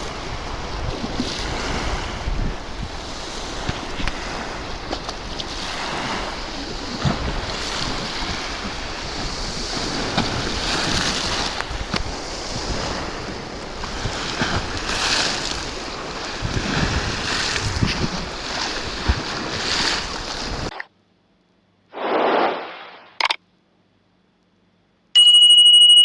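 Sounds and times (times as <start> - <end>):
surf breaking on shore: 0.0 - 20.7
wind buffeting microphone: 0.0 - 20.7.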